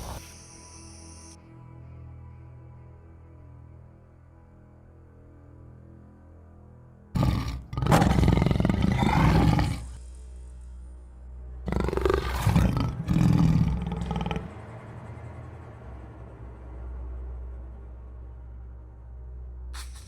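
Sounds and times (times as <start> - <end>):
tiger roaring: 7.2 - 10.0, 11.7 - 14.5.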